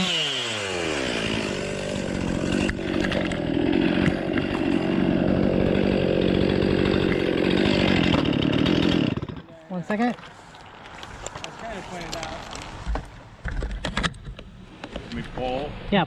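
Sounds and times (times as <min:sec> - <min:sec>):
chainsaw cutting wood: 0:00.0 - 0:09.5.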